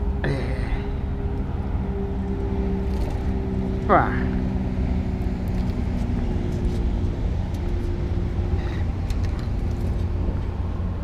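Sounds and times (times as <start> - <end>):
faint engine hum: 0.0 - 11.0.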